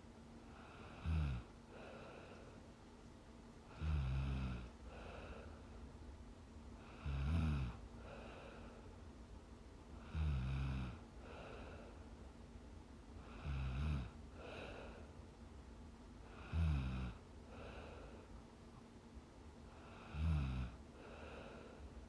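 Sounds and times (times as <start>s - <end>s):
soft breathing: 0.0s - 9.2s, 9.9s - 12.5s, 13.1s - 15.5s, 16.2s - 19.0s, 19.6s - 22.0s
woman snoring: 0.6s - 2.4s, 3.7s - 5.5s, 6.8s - 8.7s, 10.0s - 11.7s, 13.2s - 15.0s, 16.3s - 17.9s, 19.8s - 21.6s.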